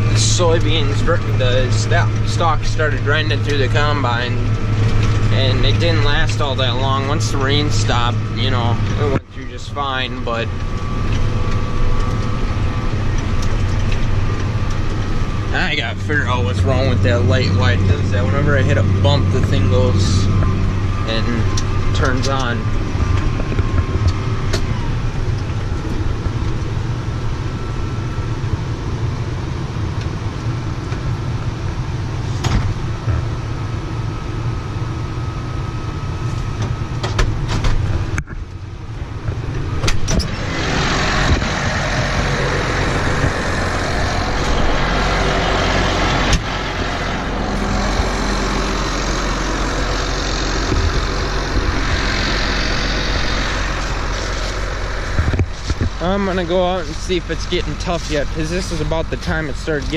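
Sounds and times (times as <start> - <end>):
combine harvester engine drone: 0.0 - 59.9
harsh rushing noise: 39.0 - 59.9.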